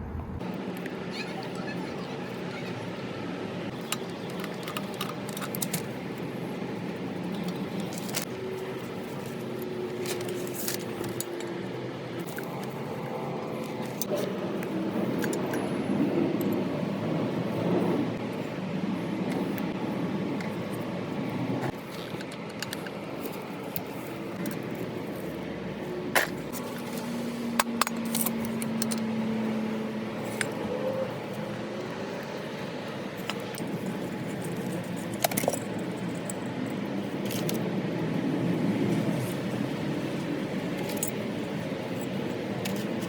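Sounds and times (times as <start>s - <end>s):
metal parts and tools clinking: 7.2s - 15.7s, 26.1s - 29.2s, 33.1s - 37.6s, 40.8s - 43.0s.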